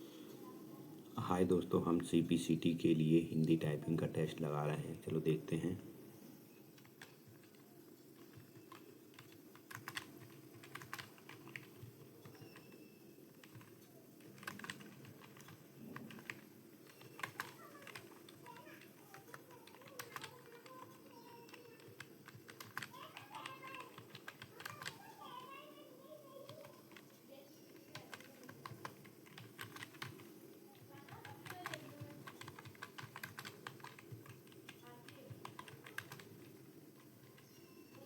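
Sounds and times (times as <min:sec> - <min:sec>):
keyboard typing clicks: 0:06.7 - 0:25.0, 0:27.7 - 0:38.0.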